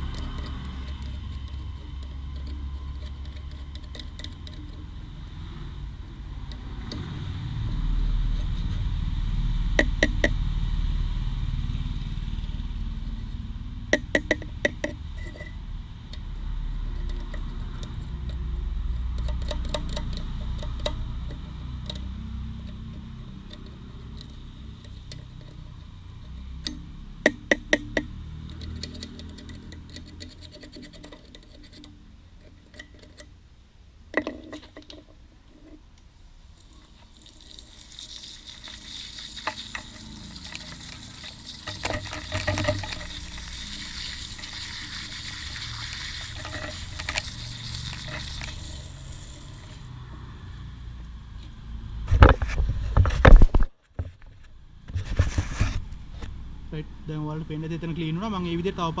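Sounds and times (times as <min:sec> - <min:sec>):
sharp metal clicks: 0:00.0 - 0:05.4, 0:13.8 - 0:33.4
water spray hissing: 0:36.6 - 0:50.0.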